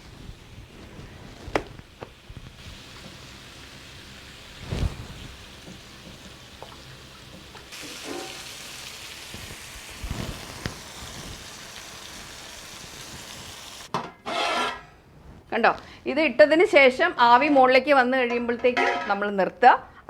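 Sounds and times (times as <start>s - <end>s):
fish frying in oil: 0.0s - 13.9s.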